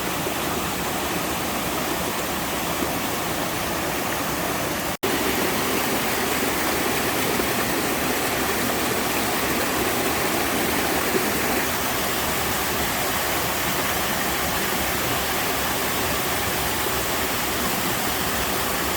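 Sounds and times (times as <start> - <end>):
waterfall rushing over rock: 0.0 - 18.9.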